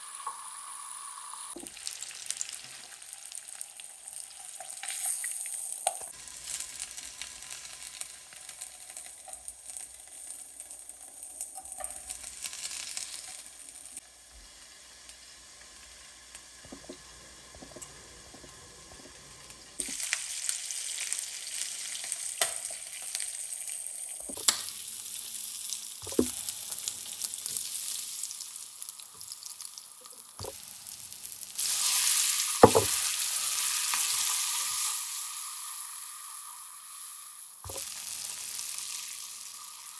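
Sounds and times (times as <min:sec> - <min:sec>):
food sizzling in a pan: 0:00.0 - 0:39.9
utensil knocking: 0:32.6 - 0:33.0.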